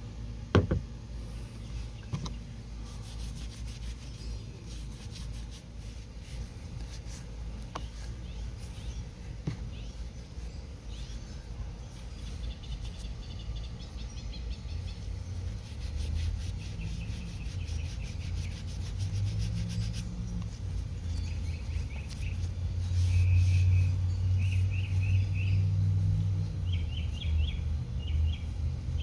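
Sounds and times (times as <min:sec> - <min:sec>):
steady low hum: 0:00.0 - 0:29.0
birds chirping faintly: 0:00.5 - 0:29.0
hand scrubbing exhaust pipe: 0:02.8 - 0:09.2, 0:14.9 - 0:26.5.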